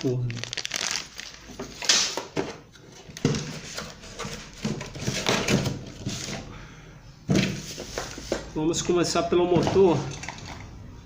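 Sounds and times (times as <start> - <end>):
packaging rustling: 0.0 - 6.4.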